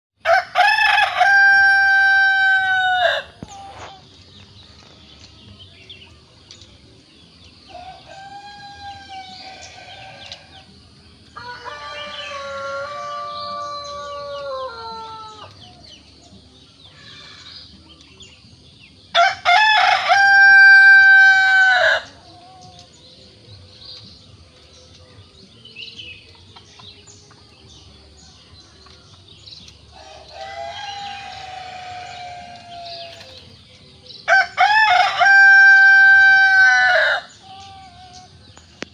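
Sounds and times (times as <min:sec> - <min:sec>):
rooster crowing: 0:00.2 - 0:03.4, 0:11.4 - 0:15.5, 0:19.2 - 0:22.1, 0:30.0 - 0:33.2, 0:34.3 - 0:37.3.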